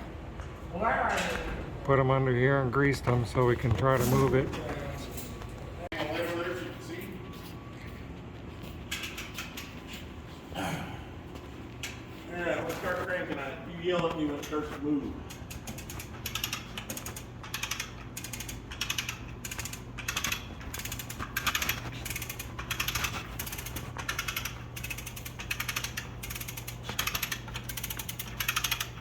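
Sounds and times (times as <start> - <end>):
hand ratchet clicking: 15.3 - 29.0.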